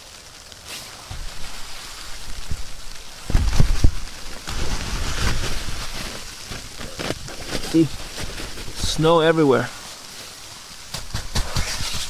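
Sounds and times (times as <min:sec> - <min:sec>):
wet snow pattering on tarp: 0:00.0 - 0:12.0
microphone handling thumps: 0:01.1 - 0:08.9, 0:10.9 - 0:12.0
wind gusting: 0:01.1 - 0:09.1.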